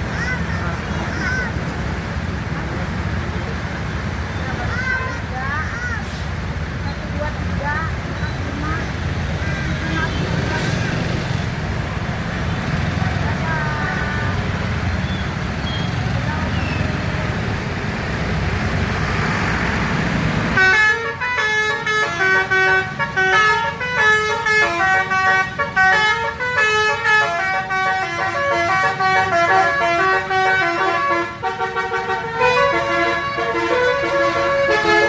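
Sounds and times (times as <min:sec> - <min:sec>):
traffic and engine rumble: 0:00.0 - 0:35.0
musical air horn melody: 0:20.6 - 0:35.0.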